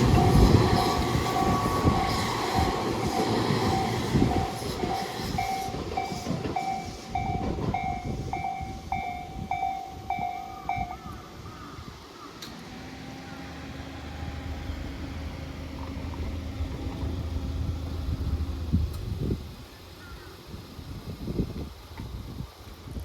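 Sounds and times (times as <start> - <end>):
level crossing warning bell: 0.0 - 11.1
train rumbling: 0.0 - 20.0.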